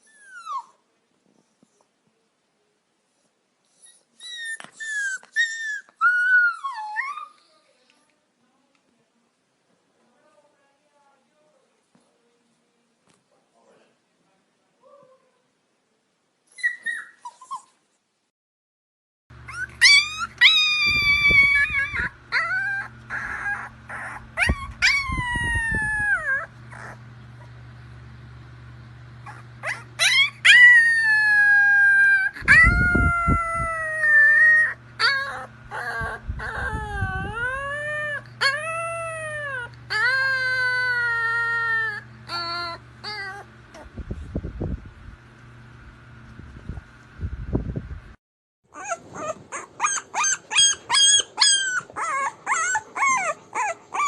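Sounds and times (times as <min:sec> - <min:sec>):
puppy whining: 0:00.0 - 0:00.8, 0:03.6 - 0:07.6, 0:16.5 - 0:17.8, 0:19.4 - 0:27.6, 0:29.2 - 0:44.0, 0:48.7 - 0:54.0
steady low hum: 0:19.4 - 0:48.2.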